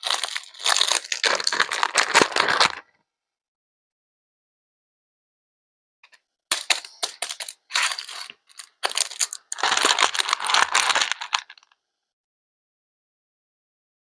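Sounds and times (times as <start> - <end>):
rustling: 6.5 - 11.6
clicks and crackling: 6.5 - 11.7.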